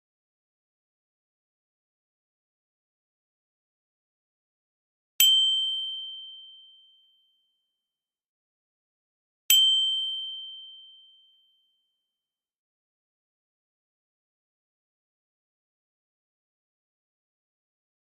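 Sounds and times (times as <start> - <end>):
bright bell-like ding: 5.2 - 7.2, 9.5 - 11.8.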